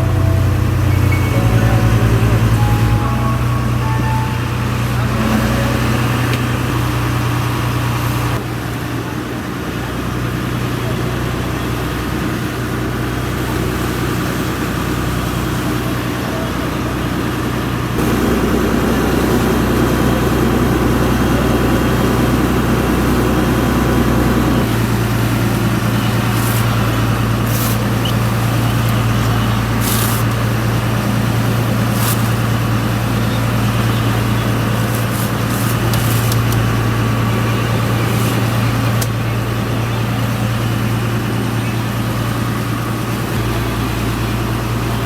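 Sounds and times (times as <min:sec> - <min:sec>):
boat engine humming: 0:00.0 - 0:45.0
bursts of hiss: 0:26.1 - 0:30.5.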